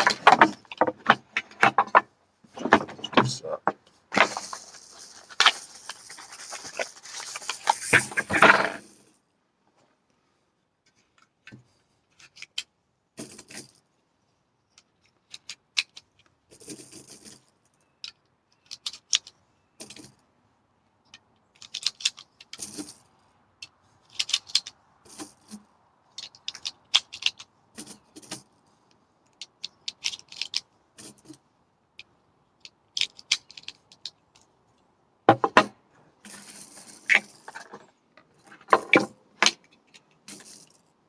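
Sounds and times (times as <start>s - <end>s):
metal clicks and rattles: 14.8s - 20.2s, 21.1s - 23.0s, 23.6s - 28.5s, 29.2s - 31.4s, 32.6s - 40.9s.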